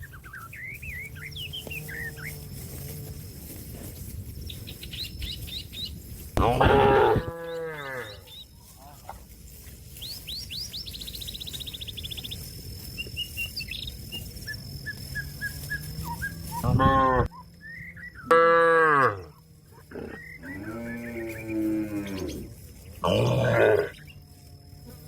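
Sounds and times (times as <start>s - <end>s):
small birds chirping: 0.0s - 3.0s, 3.8s - 18.3s, 19.8s - 24.3s
cow mooing: 6.4s - 8.2s, 16.6s - 17.3s, 18.3s - 24.0s.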